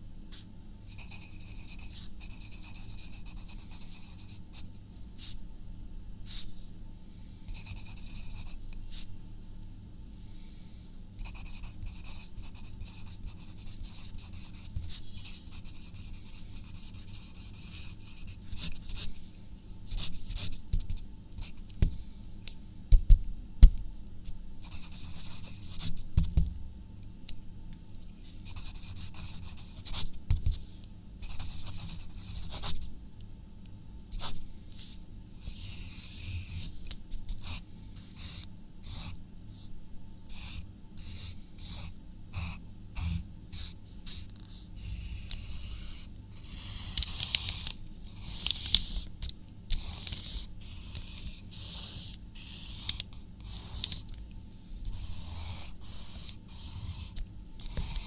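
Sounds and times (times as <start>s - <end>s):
low steady hum: 0.0s - 58.0s
pen scratching on paper: 11.2s - 19.1s, 31.2s - 32.8s, 34.2s - 36.7s, 40.3s - 49.1s, 49.7s - 54.0s, 54.9s - 58.0s.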